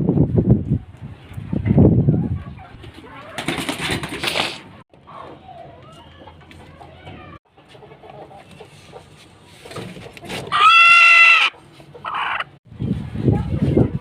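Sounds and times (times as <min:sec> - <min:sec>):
chicken calling loudly: 0:10.4 - 0:12.6.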